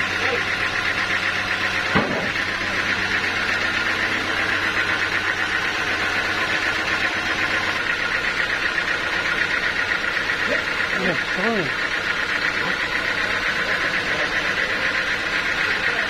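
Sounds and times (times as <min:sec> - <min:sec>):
sawmill machinery running: 0:00.0 - 0:16.0.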